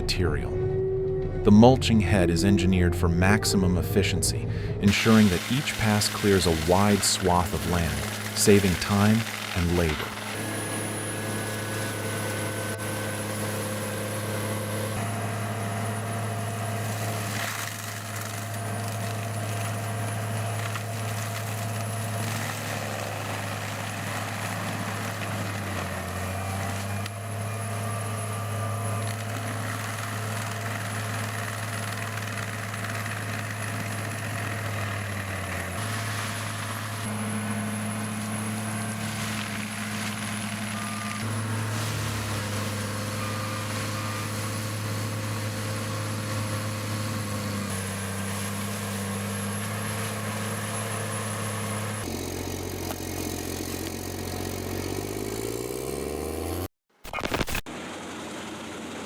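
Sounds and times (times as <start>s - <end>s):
mulcher engine drone: 0.0s - 59.0s.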